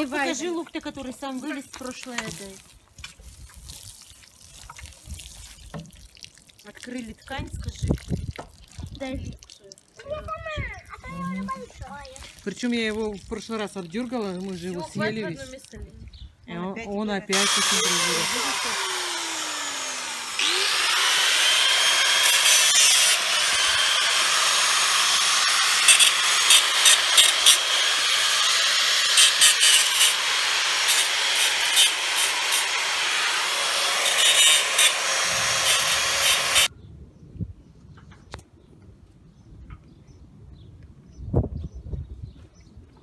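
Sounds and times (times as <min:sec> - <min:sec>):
power tool grinding with high whine: 0:17.3 - 0:36.7
sharp scrapes: 0:17.4 - 0:36.7.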